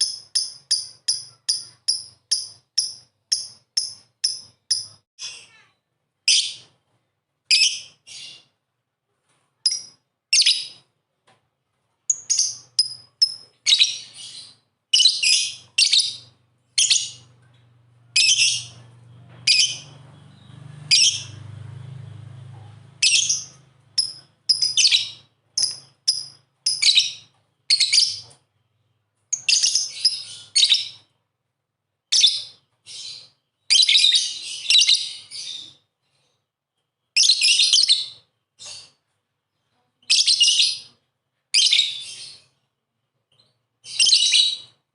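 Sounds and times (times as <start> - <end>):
lovebird chirping: 0.0 - 5.0, 9.6 - 10.8, 12.1 - 17.3, 18.1 - 21.4, 23.0 - 31.1, 32.1 - 35.8, 40.0 - 42.6, 43.3 - 44.8
faint low hum: 15.6 - 24.9.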